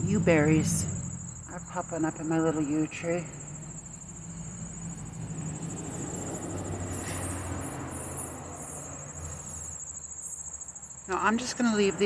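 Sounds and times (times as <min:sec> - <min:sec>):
low rumble: 0:00.0 - 0:06.0
crickets trilling: 0:00.0 - 0:12.0.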